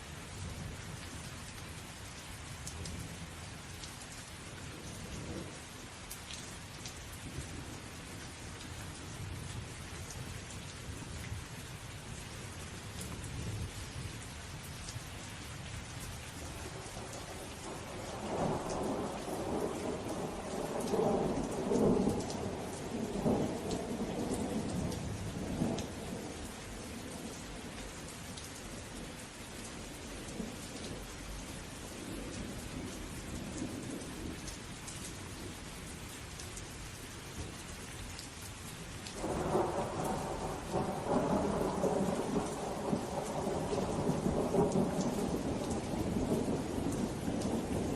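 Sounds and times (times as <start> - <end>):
steady rain: 0.0 - 47.9
thunder rumbling: 16.7 - 26.3, 39.2 - 47.9.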